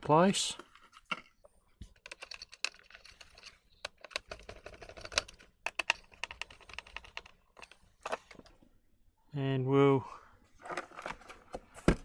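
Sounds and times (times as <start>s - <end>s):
small clicks and rattles of screws: 1.8s - 8.6s.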